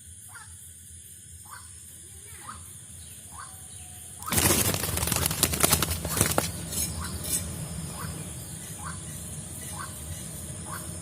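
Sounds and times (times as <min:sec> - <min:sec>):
dove wings flapping: 0:04.2 - 0:06.9.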